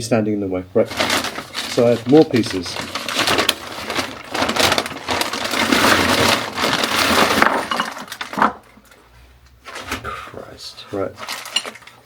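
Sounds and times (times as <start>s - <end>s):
metal pipe fittings clattering: 5.7s - 9.0s, 11.2s - 12.0s.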